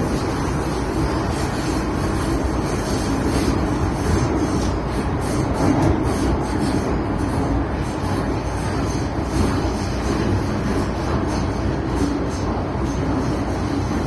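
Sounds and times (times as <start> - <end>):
train wheels and motors rumbling: 0.0 - 14.0.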